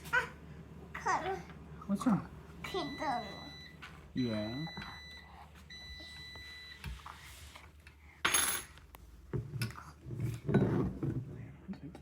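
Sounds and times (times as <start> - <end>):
faint steady high tone: 2.6 - 6.9.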